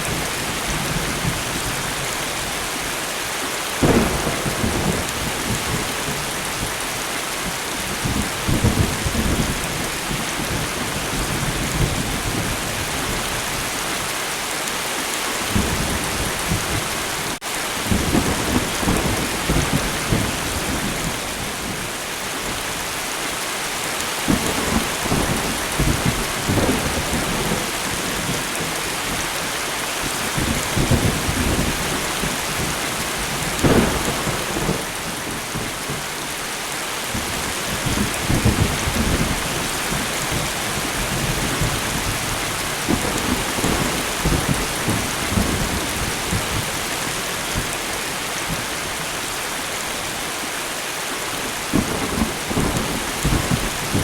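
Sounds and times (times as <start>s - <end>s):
light rain: 0.0s - 54.0s
thunder rolling: 3.8s - 6.8s, 24.3s - 29.2s, 30.4s - 36.0s.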